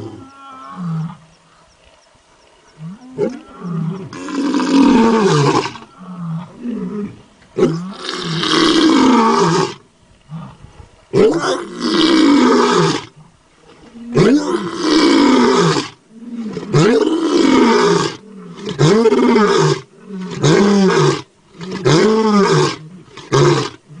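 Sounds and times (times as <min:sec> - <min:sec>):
lion roaring: 0:02.8 - 0:10.6.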